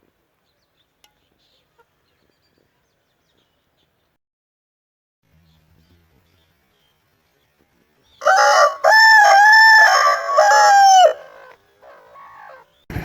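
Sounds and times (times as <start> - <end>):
rooster crowing: 8.2 - 12.7.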